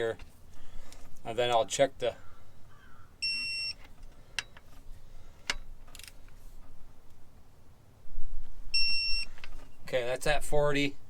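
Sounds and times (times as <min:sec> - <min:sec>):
high electronic beep: 0:08.8 - 0:09.3.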